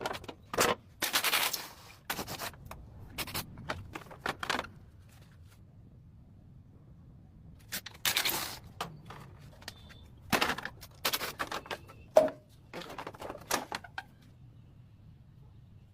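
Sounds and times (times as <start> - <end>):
hand tools clicking and knocking: 8.8 - 14.0.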